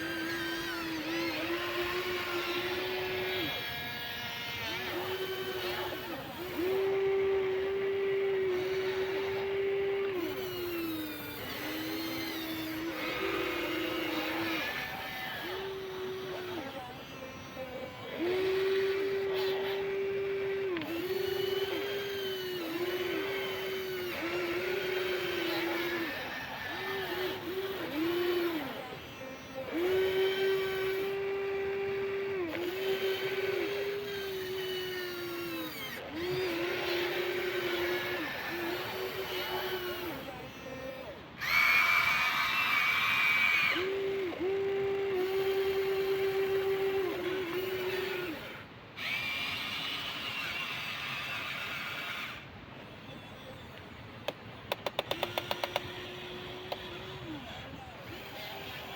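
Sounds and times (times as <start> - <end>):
electric motors whining: 0.0 - 58.9.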